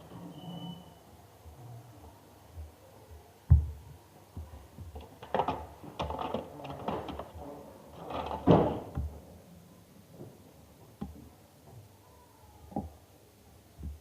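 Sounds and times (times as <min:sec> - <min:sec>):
thump: 0:03.5 - 0:03.8.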